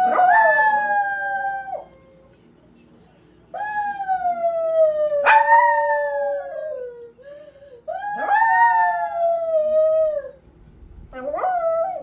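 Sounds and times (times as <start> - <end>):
dog howling: 3.6 - 7.1, 7.9 - 10.3.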